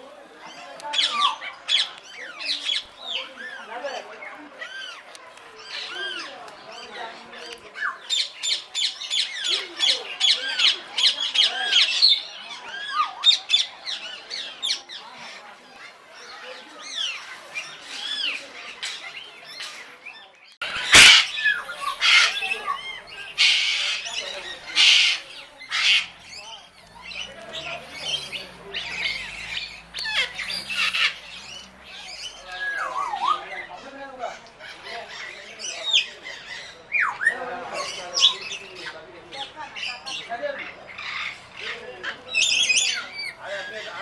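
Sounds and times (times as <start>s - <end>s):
parrots chirping and whistling: 20.6s - 33.7s
parrots squawking: 20.6s - 44.0s.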